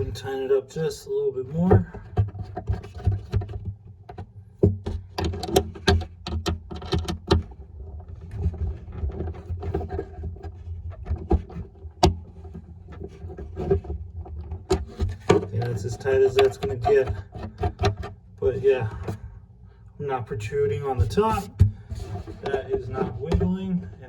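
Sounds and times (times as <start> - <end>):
screw clicks and knocks: 2.0 - 7.6, 16.3 - 18.2
steady low hum: 7.5 - 24.0.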